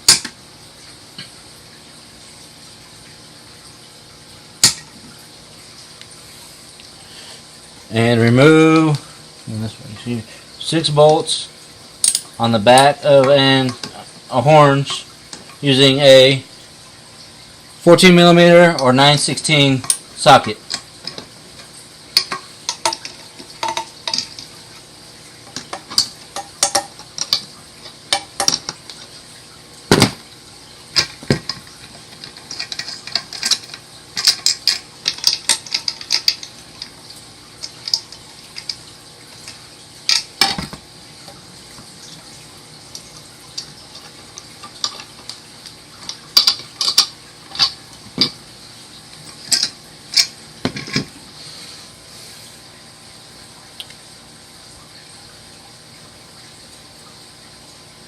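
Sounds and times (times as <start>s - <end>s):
metal parts knocking together: 28.1s - 28.8s, 29.9s - 30.2s, 31.0s - 36.9s, 40.1s - 40.8s, 46.0s - 48.4s, 49.4s - 51.1s.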